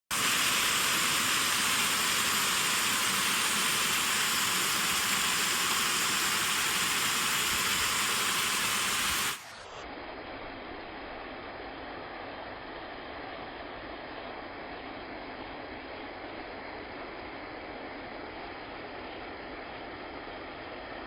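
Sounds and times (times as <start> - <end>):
waterfall rushing: 0.1 - 9.7.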